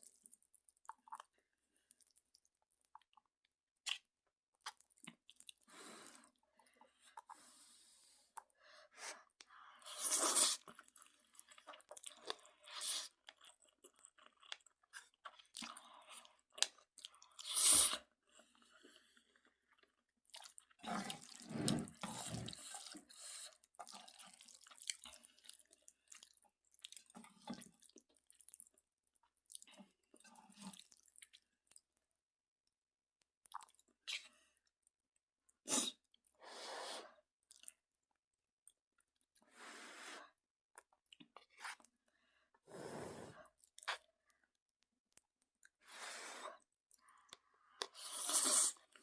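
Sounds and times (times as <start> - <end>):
wet chewing and mouth sounds: 0.0 - 7.5, 9.3 - 32.0, 33.4 - 34.7, 37.5 - 37.8, 40.8 - 42.6, 43.5 - 45.8, 46.6 - 49.0.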